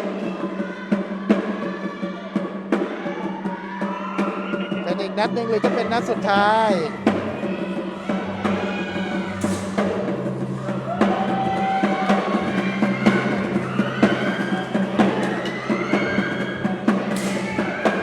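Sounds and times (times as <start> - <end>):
music with steady drum beat: 0.0 - 18.0.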